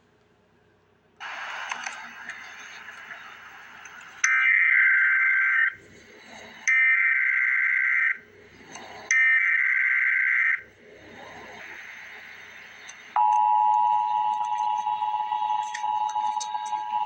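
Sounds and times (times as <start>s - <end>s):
two-tone digital data bursts: 11.6s - 17.0s.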